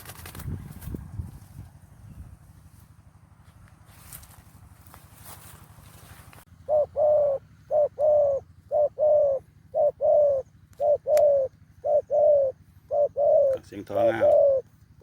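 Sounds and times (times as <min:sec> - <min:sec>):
dove cooing: 0:06.5 - 0:14.8.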